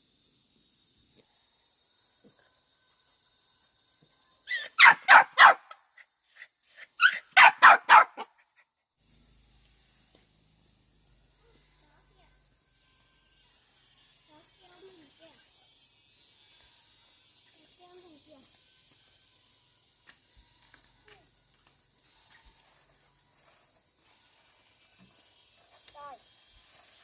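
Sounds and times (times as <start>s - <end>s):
insects chirping: 0.0s - 27.0s
dog barking: 4.5s - 5.8s, 7.0s - 8.3s.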